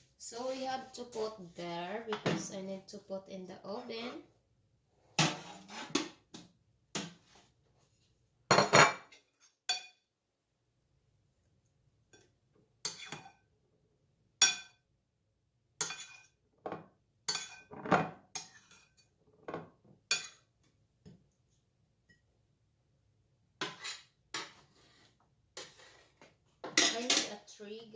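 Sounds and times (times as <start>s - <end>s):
dishes and utensils clinking: 12.2s - 13.4s, 15.8s - 20.5s, 23.6s - 24.7s, 26.6s - 27.4s.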